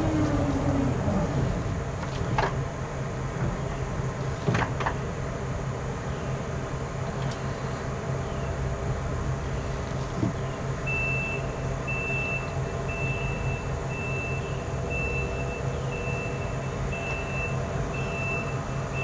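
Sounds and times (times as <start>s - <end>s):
electric mower motors humming: 0.0s - 2.9s.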